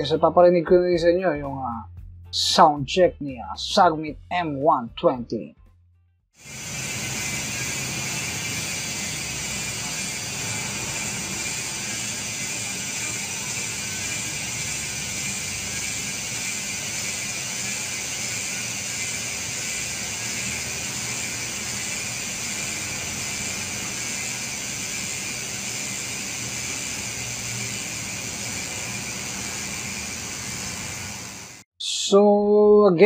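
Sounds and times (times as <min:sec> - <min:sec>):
bicycle hub ratcheting buzz: 0:06.4 - 0:31.6.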